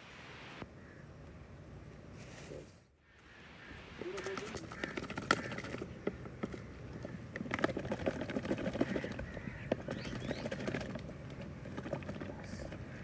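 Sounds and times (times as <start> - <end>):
bird calls: 3.6 - 13.0.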